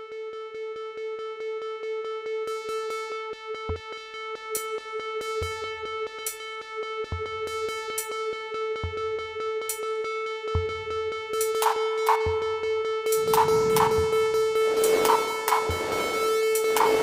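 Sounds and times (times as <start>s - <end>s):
low bass thump: 13.2s - 14.6s.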